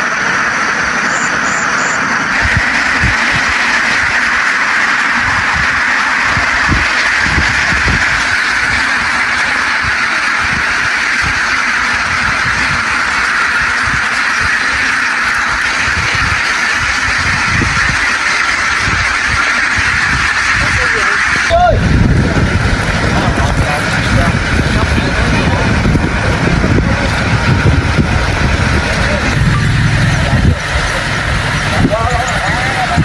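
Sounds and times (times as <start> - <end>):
low rumbles: 0.0 - 20.8, 21.4 - 33.0
flock of ducks quacking: 0.0 - 21.5.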